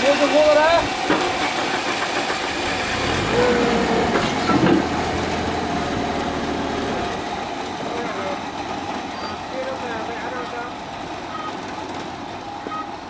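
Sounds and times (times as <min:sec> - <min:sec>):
machine motor humming: 0:02.7 - 0:08.6.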